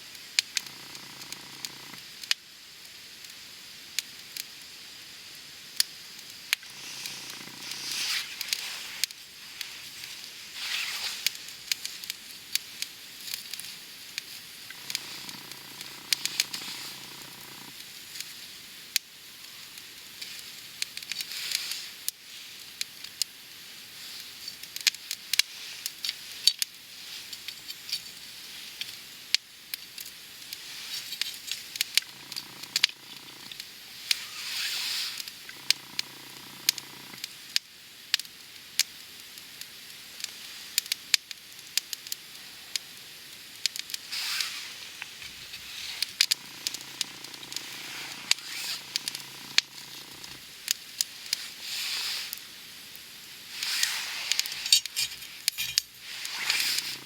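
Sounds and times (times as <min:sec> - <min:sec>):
campfire crackling and popping: 0:05.7 - 0:19.1, 0:19.7 - 0:57.0
fire hissing: 0:06.0 - 0:38.2, 0:39.0 - 0:57.0.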